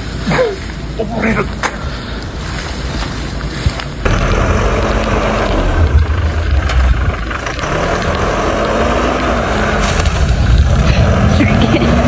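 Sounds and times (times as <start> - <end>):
vehicle engine running: 0.0 - 12.0.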